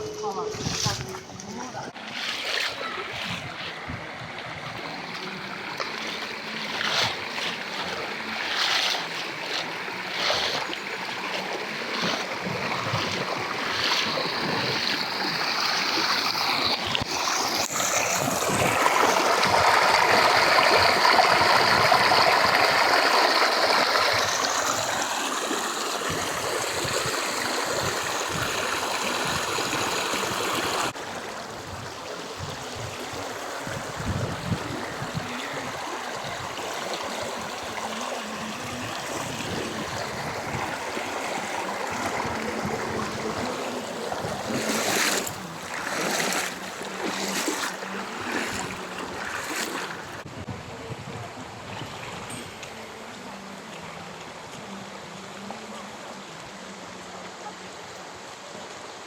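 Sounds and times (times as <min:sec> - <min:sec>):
stream water rushing: 0:00.0 - 0:59.0
wind gusts on microphone: 0:16.9 - 0:24.9, 0:26.0 - 0:36.7, 0:38.5 - 0:45.4, 0:50.1 - 0:52.8.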